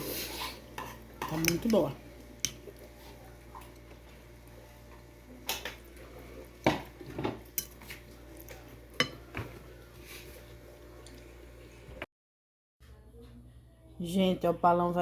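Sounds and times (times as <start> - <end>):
cutlery clinking on a plate: 9.0 - 9.5.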